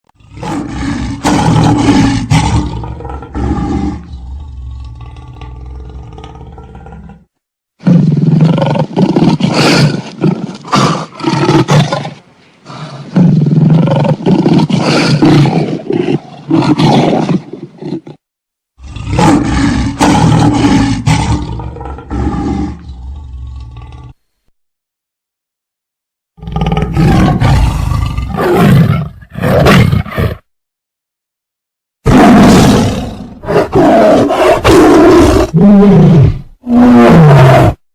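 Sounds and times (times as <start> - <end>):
big cat roaring: 0.2 - 12.0, 18.8 - 24.2, 26.4 - 30.4, 32.1 - 37.8.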